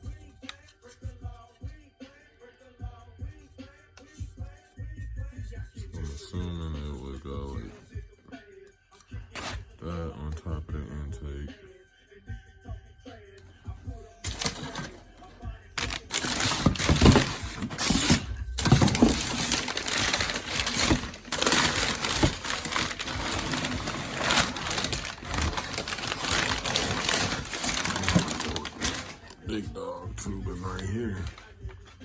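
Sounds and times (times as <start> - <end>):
plastic packaging crinkling: 14.2 - 15.2, 15.8 - 29.6.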